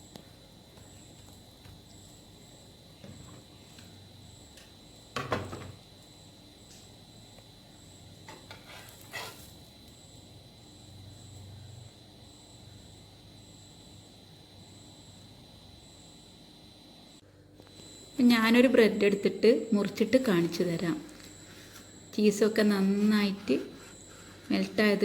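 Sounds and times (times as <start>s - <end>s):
thin high whine: 0.0s - 25.0s
utensils scraping on a pan: 8.3s - 9.6s.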